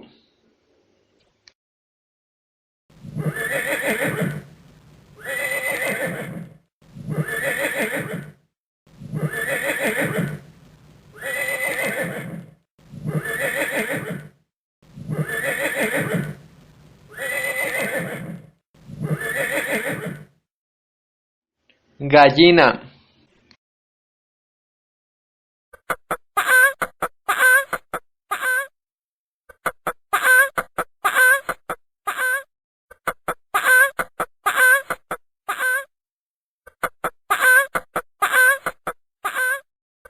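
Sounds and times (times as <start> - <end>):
horse whinnying: 3.1 - 4.5, 5.2 - 8.4, 9.0 - 10.5, 11.2 - 14.4, 15.0 - 16.4, 17.1 - 20.4.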